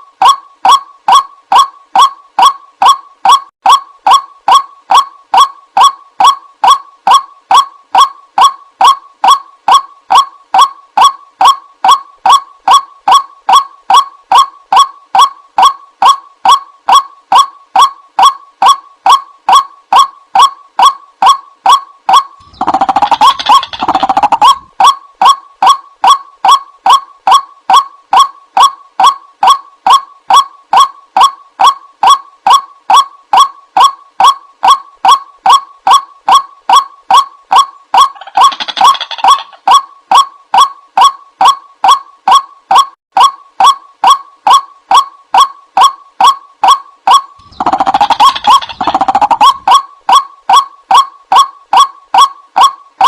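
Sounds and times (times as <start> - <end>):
nasal bird call notes: 0.2 - 37.3, 47.4 - 53.0
harsh bird call: 22.2 - 25.8, 47.4 - 50.2.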